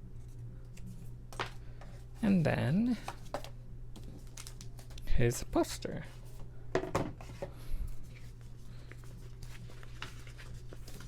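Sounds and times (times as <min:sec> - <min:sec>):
steady low hum: 0:00.0 - 0:11.0
paper rustling: 0:03.0 - 0:05.0, 0:07.2 - 0:11.0.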